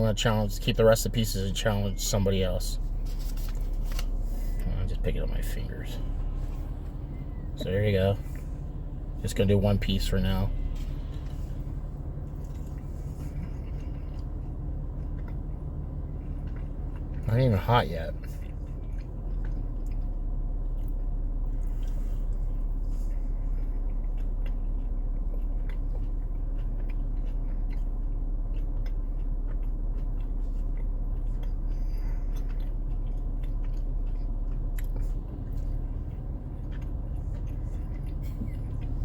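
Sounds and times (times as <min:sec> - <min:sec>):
low rumble: 0:00.0 - 0:39.0
person chewing: 0:00.5 - 0:39.0
wet mouth clicks: 0:10.5 - 0:17.3, 0:18.1 - 0:39.0.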